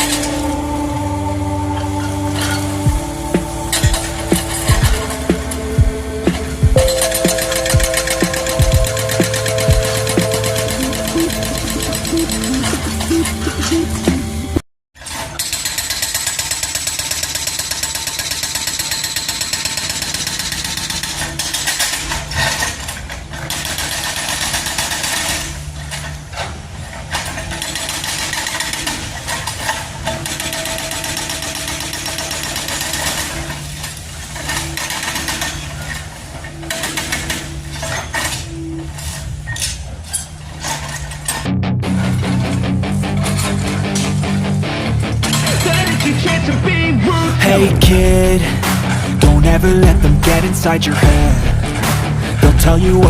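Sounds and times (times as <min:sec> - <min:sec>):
excavator engine running: 0:00.0 - 0:14.6, 0:20.7 - 0:53.0
mechanical clatter: 0:15.0 - 0:44.2.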